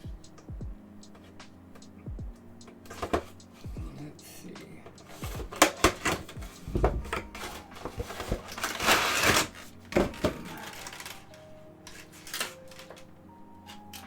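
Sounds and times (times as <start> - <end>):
packaging clicks and knocks: 2.6 - 3.4, 4.9 - 14.0
crinkly packaging rustle: 4.9 - 14.0.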